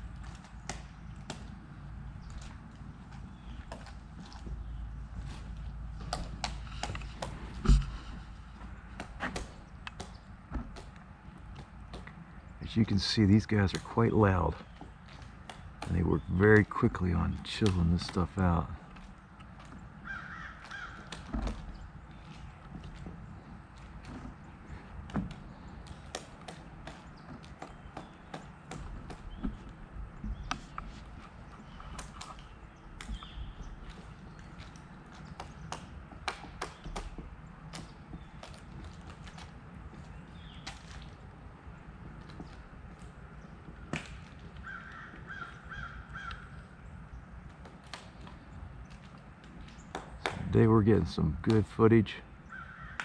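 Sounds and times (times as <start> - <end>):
woodpecker chiseling into wood: 6.0 - 12.3, 13.4 - 41.2, 42.0 - 46.7, 47.4 - 50.5, 52.5 - 53.0.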